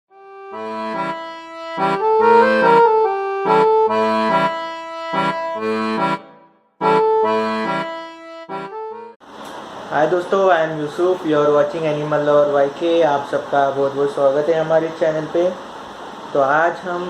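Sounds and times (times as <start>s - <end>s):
accordion-like reed instrument tune: 0.1s - 9.2s.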